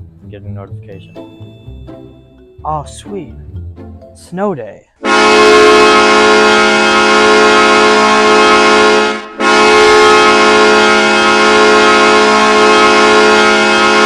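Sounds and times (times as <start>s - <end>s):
arena goal horn blasts: 5.0s - 14.0s.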